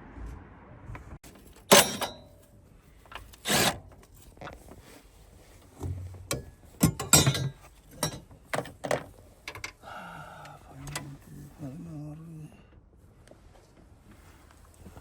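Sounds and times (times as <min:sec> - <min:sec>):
metallic clicks and knocks: 0:01.3 - 0:02.4, 0:05.8 - 0:09.8
ratchet scraping: 0:03.1 - 0:03.8.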